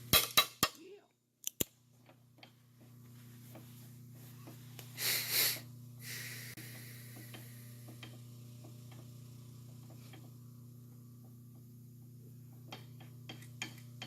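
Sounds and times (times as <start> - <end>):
breathy hiss: 4.9 - 7.8.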